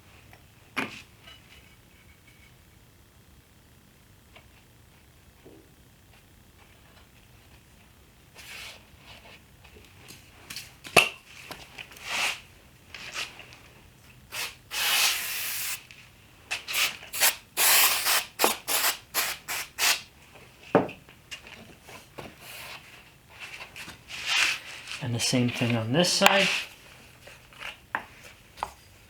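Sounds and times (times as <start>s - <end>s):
hissing spray bursts: 14.3s - 15.8s, 17.1s - 20.0s.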